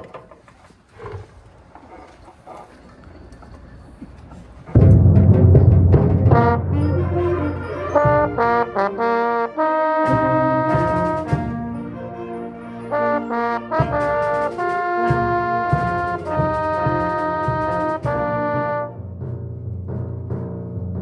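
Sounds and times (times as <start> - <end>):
brass fanfare: 6.1 - 19.1.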